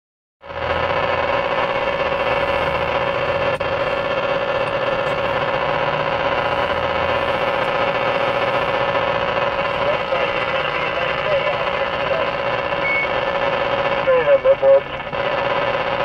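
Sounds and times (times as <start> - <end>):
radio static hiss: 0.4 - 16.0
steady mid-pitched tone: 0.4 - 16.0
radio click: 0.6 - 16.0.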